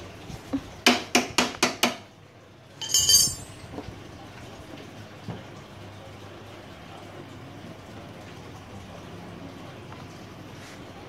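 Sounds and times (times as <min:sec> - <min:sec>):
metal hand tools clinking: 0:02.8 - 0:03.6
metallic rattling jangle: 0:02.8 - 0:03.7.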